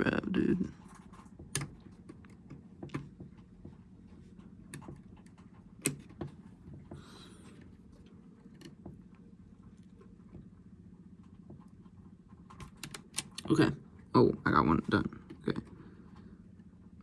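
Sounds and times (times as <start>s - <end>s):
low steady hum: 0.0s - 17.0s
clicks and taps of tools: 1.4s - 3.8s, 4.7s - 7.7s.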